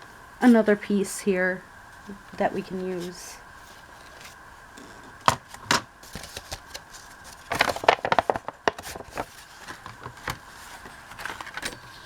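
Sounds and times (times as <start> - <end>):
paper rustling and snipping: 5.2 - 12.0.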